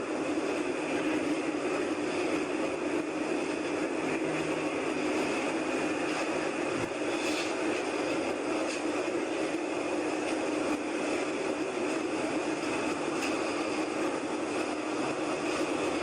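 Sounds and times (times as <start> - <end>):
low hum: 2.4 - 7.0
droning roar: 3.1 - 6.7.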